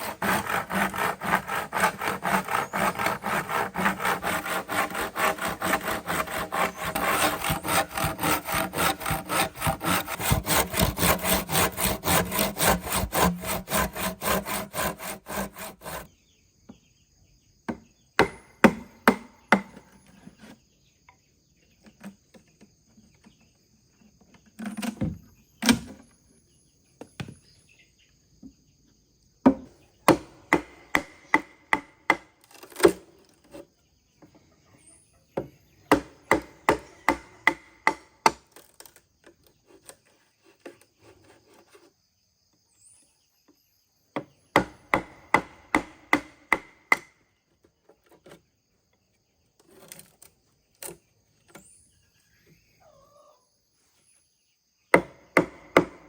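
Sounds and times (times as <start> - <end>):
hand tool striking bamboo: 0.0 - 16.0.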